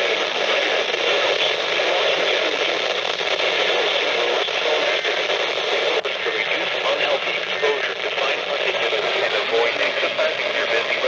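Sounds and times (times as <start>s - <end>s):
radio static hiss: 0.0s - 11.0s.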